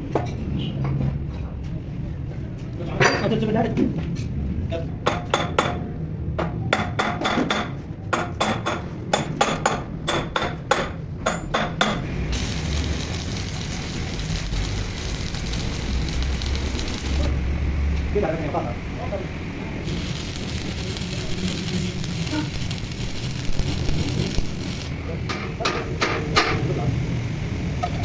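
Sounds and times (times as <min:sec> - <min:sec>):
steady hiss: 0:12.4 - 0:17.3, 0:19.8 - 0:26.2.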